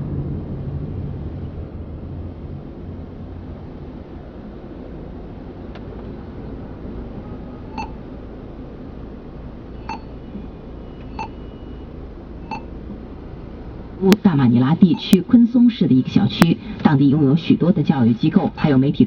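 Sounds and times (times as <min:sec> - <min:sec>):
low rumble inside moving car: 0:00.0 - 0:19.0
short electronic key beeps: 0:09.8 - 0:11.8, 0:12.4 - 0:12.7.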